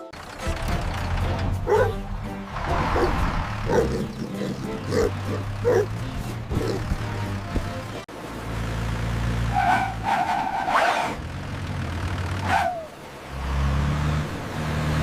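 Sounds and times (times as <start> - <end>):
bus engine droning: 0.0 - 15.0.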